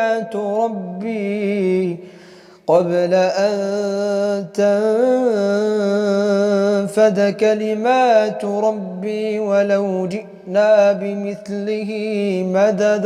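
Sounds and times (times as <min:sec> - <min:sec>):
man chanting melodically: 0:00.0 - 0:02.0, 0:02.7 - 0:13.0.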